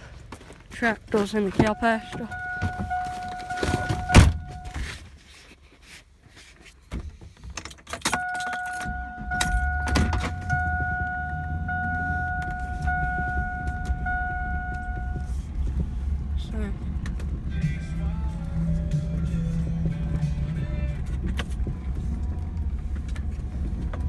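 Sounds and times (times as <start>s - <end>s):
truck engine idling: 0.0s - 4.9s, 8.1s - 24.0s
electronic warning chime: 1.5s - 4.8s, 8.1s - 15.3s.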